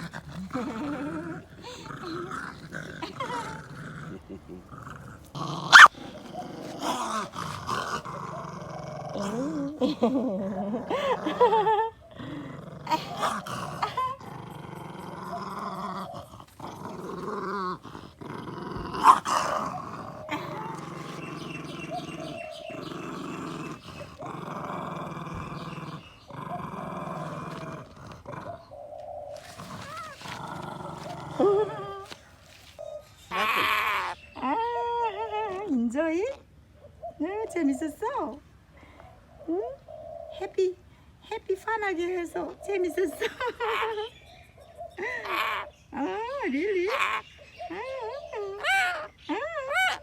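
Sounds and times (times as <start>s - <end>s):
small dog growling: 0.0s - 35.6s.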